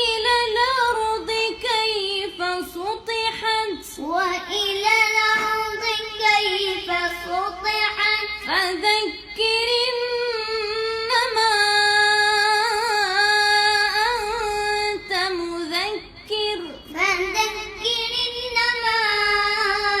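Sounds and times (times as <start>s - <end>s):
high voice chanting recitation: 0.0s - 20.0s.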